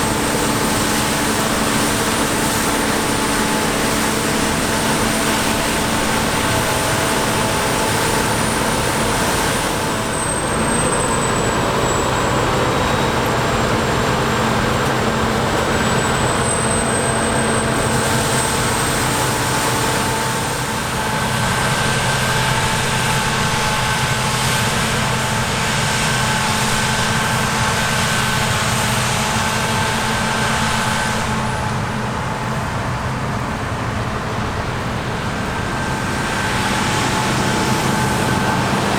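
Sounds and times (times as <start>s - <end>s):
diesel engine hum: 0.0s - 38.9s.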